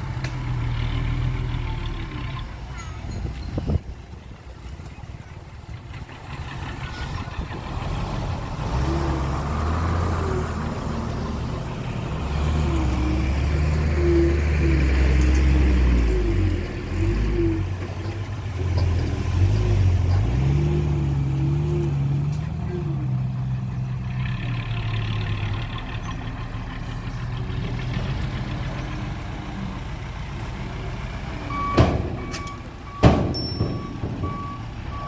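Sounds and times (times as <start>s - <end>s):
heavy diesel engine revving: 5.8s - 33.0s.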